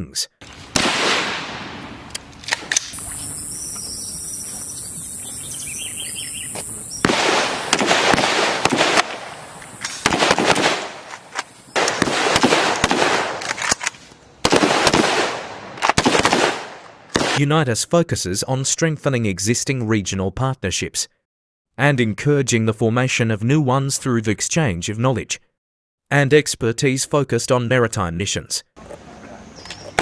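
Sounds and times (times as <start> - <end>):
steady high whine: 0.5 - 10.0
gunfire bursts: 0.7 - 3.0, 6.9 - 17.4
faint chirping: 2.9 - 7.1.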